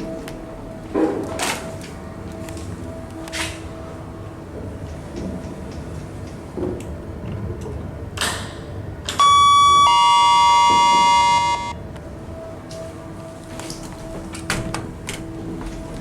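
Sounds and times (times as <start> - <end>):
low hum of lift: 0.0 - 16.0
electronic lift chime: 9.2 - 11.8.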